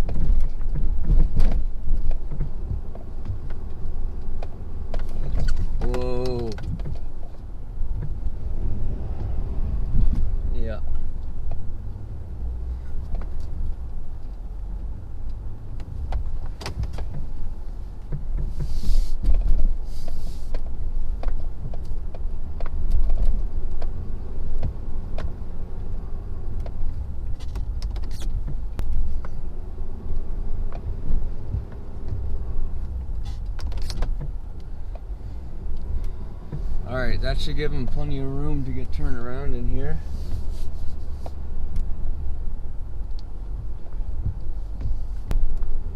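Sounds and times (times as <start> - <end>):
brief hisses: 18.6 - 19.2.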